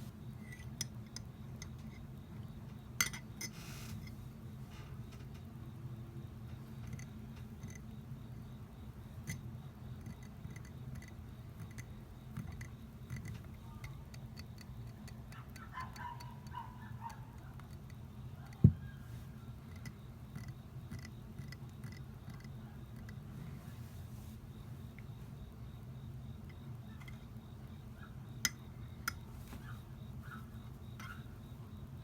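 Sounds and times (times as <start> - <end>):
steady low hum: 0.0 - 32.0
faint small ticks: 10.0 - 18.6, 19.7 - 23.2.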